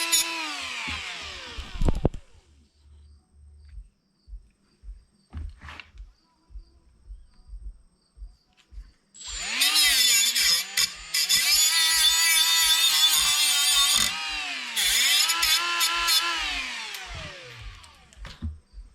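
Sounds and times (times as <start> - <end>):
power tool motor whining: 0.0 - 2.4, 9.2 - 18.2
low thumps: 0.9 - 2.3, 3.6 - 8.9.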